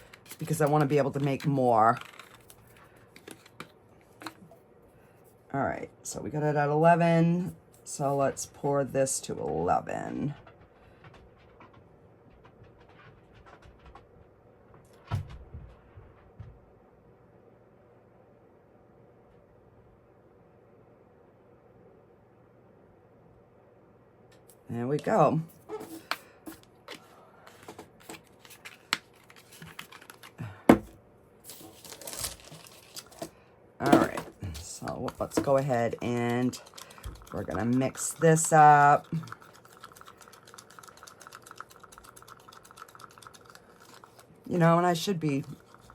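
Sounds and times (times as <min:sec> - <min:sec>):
plastic cups clicking and tapping: 0:00.0 - 0:02.6, 0:33.1 - 0:45.9.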